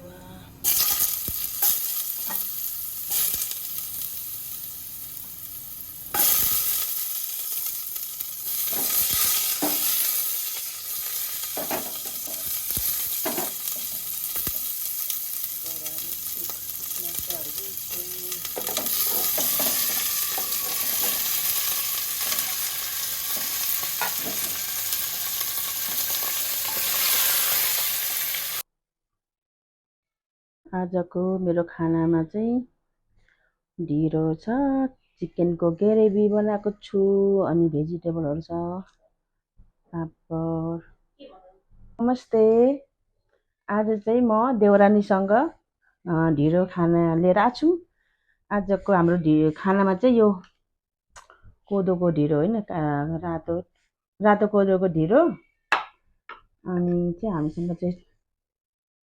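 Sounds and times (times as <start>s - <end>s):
food sizzling in hot oil: 0.6s - 28.6s.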